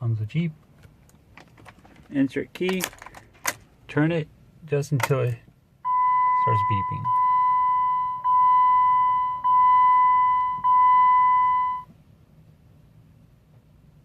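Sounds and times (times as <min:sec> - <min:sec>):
dashboard warning chime beeping: 0:05.8 - 0:11.9.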